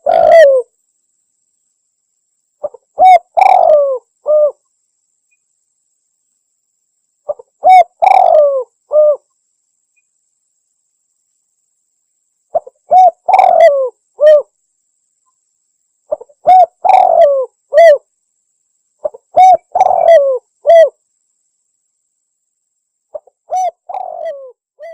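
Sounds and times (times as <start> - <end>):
dove cooing: 0.0 - 0.7, 2.6 - 4.6, 7.3 - 9.2, 12.5 - 14.5, 16.1 - 18.0, 19.0 - 21.0, 23.2 - 24.9.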